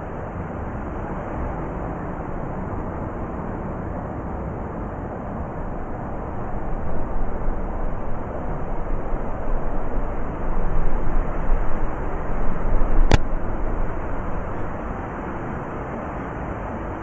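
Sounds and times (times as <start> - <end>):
blizzard wind gusting: 4.8 - 17.0
sharp click: 13.0 - 13.3.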